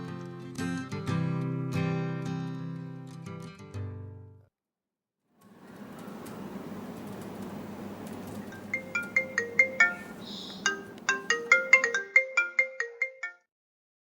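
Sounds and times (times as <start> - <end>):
ringtone melody: 8.6 - 13.5.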